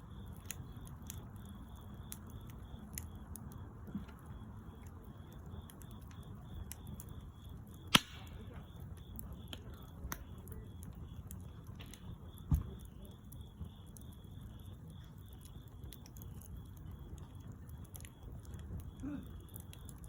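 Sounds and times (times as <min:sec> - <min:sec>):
campfire crackling and popping: 0:00.0 - 0:20.0
loud wood snap: 0:07.9 - 0:08.4.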